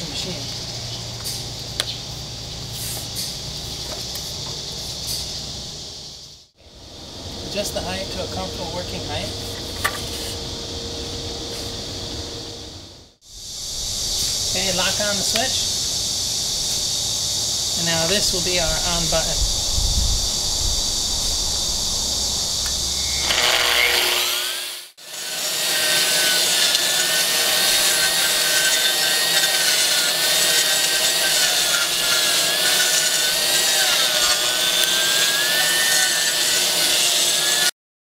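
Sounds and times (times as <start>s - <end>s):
concrete grinder motor whine: 22.6s - 24.9s.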